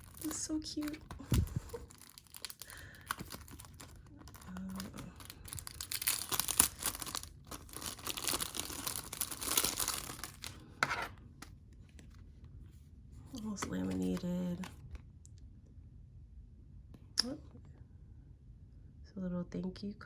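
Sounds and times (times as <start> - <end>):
packaging tearing and crinkling: 0.0 - 11.1.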